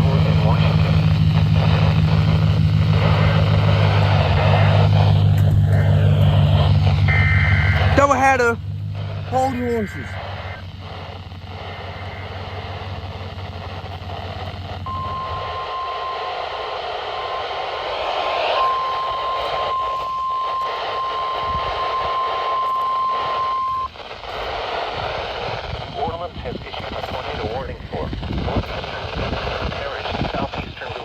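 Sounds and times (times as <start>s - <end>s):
steady alarm tone: 0.0s - 23.9s
low hum: 0.0s - 30.4s
radio static hiss: 0.0s - 31.0s.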